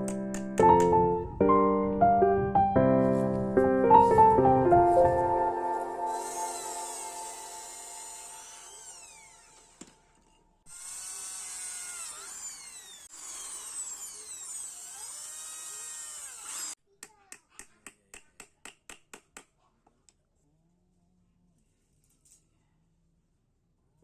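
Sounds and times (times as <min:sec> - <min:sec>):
electric drill whining: 0:06.1 - 0:16.8.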